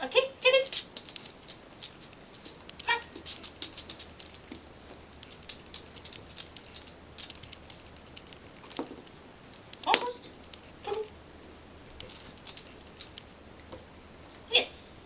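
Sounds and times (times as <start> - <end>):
dog claws on hard floor: 0.6 - 9.1, 12.0 - 13.3.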